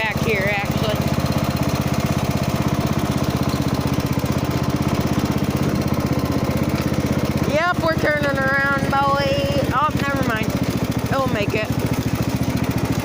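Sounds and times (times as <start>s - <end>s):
riding lawn mower engine running: 0.0s - 13.0s.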